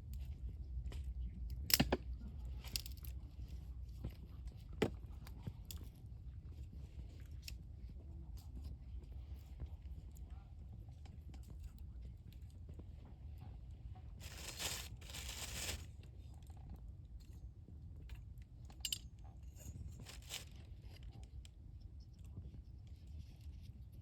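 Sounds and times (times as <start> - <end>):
crunching and rustling: 14.2 - 16.0, 19.6 - 21.0.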